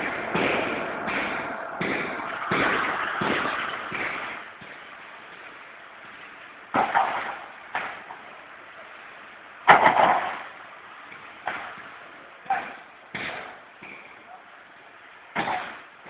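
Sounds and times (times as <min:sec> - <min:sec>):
sharp metallic clanks: 0:00.0 - 0:05.5
forming machine running: 0:00.0 - 0:08.0.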